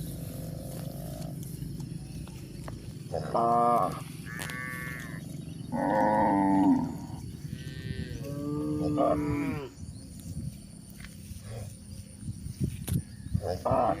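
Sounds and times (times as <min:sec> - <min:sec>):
cows mooing: 0:03.1 - 0:09.8, 0:13.4 - 0:14.0.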